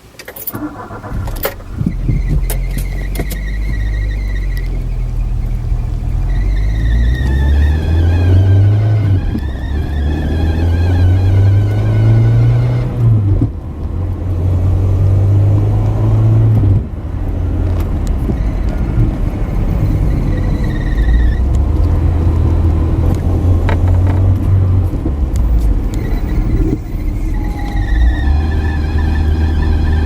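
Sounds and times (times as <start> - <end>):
high-pitched hydraulic pump squeal: 0.6 - 13.0, 18.4 - 22.3, 25.8 - 30.0
car engine running: 0.6 - 30.0.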